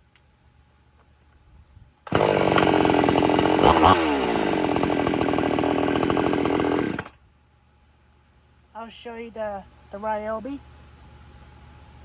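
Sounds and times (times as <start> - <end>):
chainsaw running: 2.1 - 7.2.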